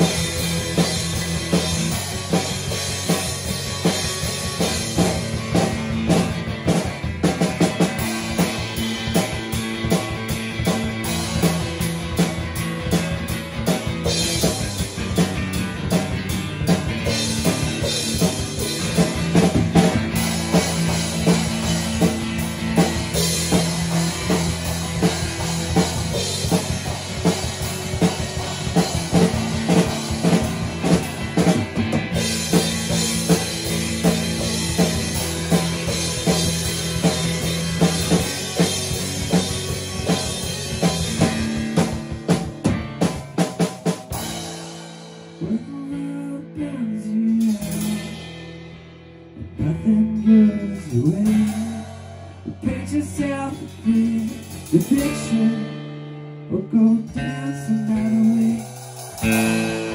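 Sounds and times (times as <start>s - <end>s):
drum kit beat: 0.0s - 46.0s, 47.3s - 48.7s, 50.2s - 55.8s, 57.1s - 59.9s
rock guitar: 0.0s - 59.9s.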